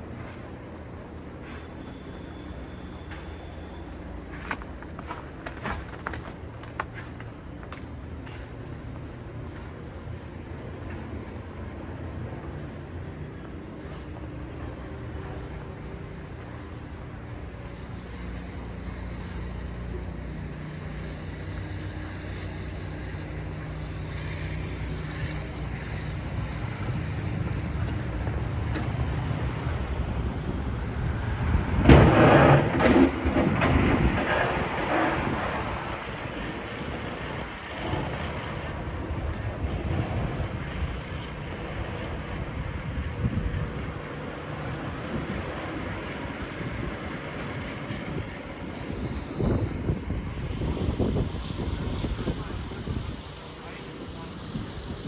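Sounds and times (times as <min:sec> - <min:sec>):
low rumble of street traffic: 0:00.0 - 0:55.0
vehicle passing close: 0:26.3 - 0:52.1
wind on microphone: 0:26.6 - 0:37.6, 0:38.2 - 0:44.2, 0:44.9 - 0:53.6.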